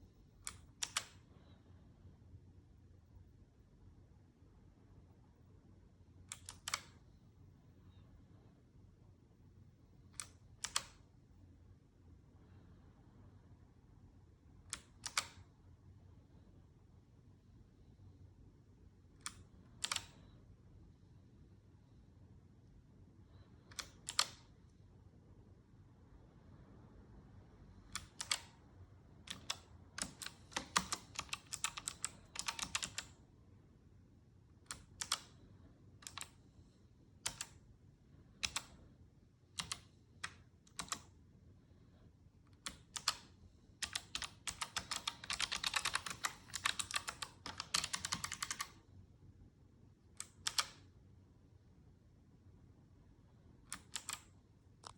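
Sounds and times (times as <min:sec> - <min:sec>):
mechanical keyboard typing: 0:00.4 - 0:01.2, 0:06.3 - 0:07.0, 0:10.2 - 0:11.0, 0:14.7 - 0:15.4, 0:19.2 - 0:20.2, 0:23.7 - 0:24.4, 0:27.9 - 0:28.5, 0:29.3 - 0:33.2, 0:34.7 - 0:35.3, 0:36.0 - 0:36.4, 0:37.2 - 0:37.6, 0:38.4 - 0:38.7, 0:39.6 - 0:41.1, 0:42.6 - 0:48.8, 0:50.2 - 0:50.8, 0:53.7 - 0:54.9.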